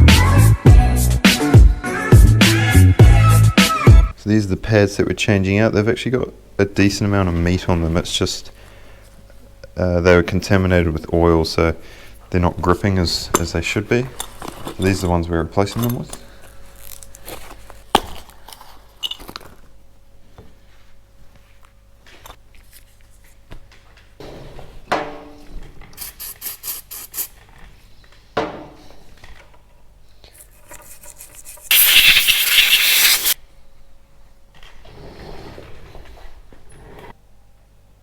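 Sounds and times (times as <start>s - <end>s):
loud hiss: 31.7s - 33.4s.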